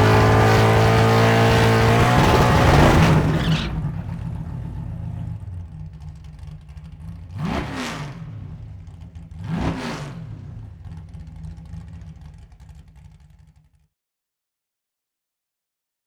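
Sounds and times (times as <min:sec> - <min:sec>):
car engine idling: 0:00.0 - 0:07.4, 0:08.2 - 0:09.6, 0:10.3 - 0:13.8.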